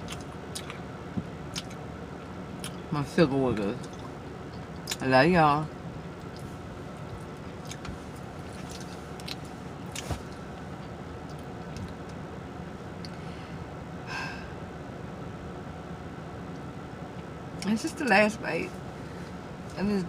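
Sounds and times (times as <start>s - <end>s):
chewing food close-up: 0.0s - 0.8s, 1.5s - 2.9s, 6.2s - 12.2s.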